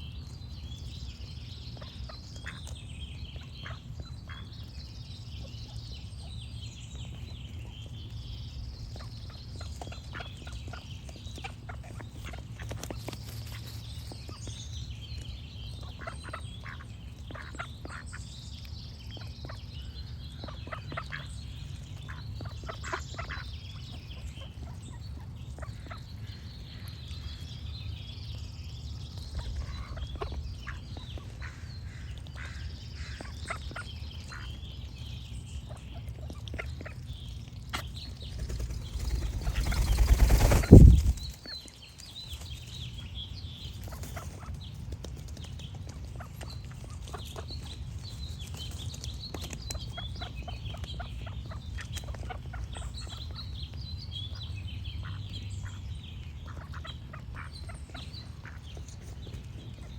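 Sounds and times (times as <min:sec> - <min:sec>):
small birds chirping: 0:00.0 - 0:59.9
steady low rumble: 0:34.2 - 0:41.4
loud rushing noise: 0:38.9 - 0:41.2.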